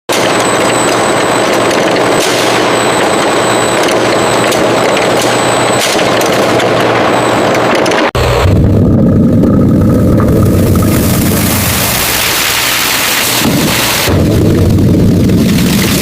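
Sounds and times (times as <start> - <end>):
thin high whine: 0.1 - 15.0
loud machinery running: 0.1 - 16.0.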